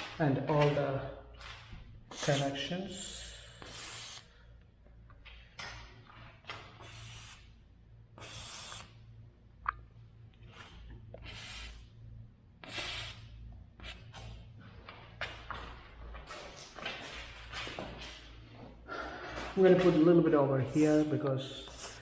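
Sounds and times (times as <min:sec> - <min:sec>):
aerosol spray hissing bursts: 0:02.1 - 0:02.6, 0:03.5 - 0:04.3, 0:06.8 - 0:07.5, 0:08.2 - 0:08.9, 0:11.2 - 0:11.8, 0:12.6 - 0:13.3, 0:20.7 - 0:21.1, 0:21.7 - 0:22.0.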